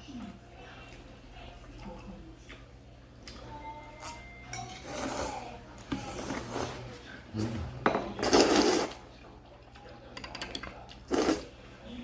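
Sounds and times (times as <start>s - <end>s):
tableware clinking against a bowl: 4.0s - 5.2s, 7.8s - 9.0s, 9.7s - 11.2s.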